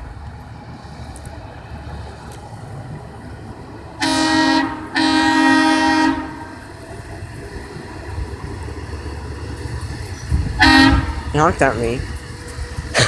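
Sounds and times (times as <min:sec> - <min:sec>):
work car horn blasts: 0:04.0 - 0:06.8, 0:10.4 - 0:13.0.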